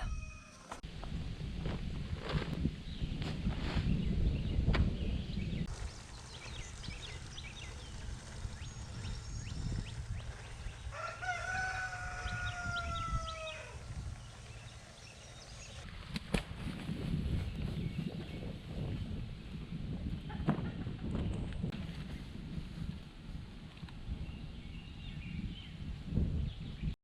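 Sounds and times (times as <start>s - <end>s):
rooster crowing: 0.0s - 0.8s, 10.9s - 13.9s
small birds chirping: 3.8s - 15.9s.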